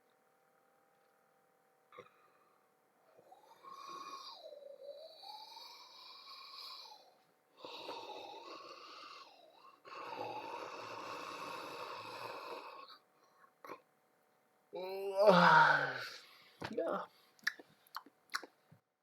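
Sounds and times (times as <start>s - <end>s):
person yawning: 14.8s - 17.1s.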